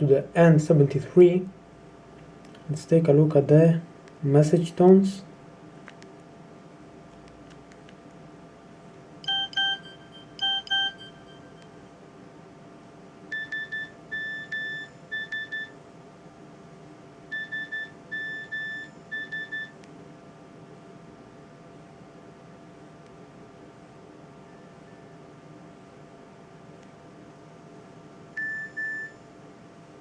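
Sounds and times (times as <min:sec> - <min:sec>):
phone message alert beeps: 0:09.2 - 0:11.6.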